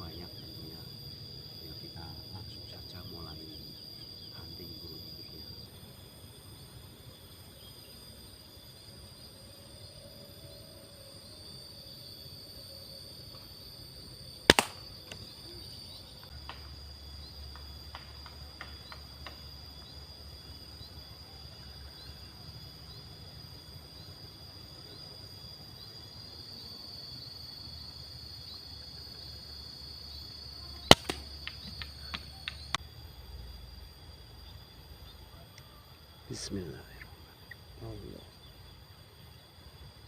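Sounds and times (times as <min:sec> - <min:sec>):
insects chirring: 0:00.0 - 0:40.0
air rifle shots: 0:14.5 - 0:14.9, 0:30.9 - 0:31.3.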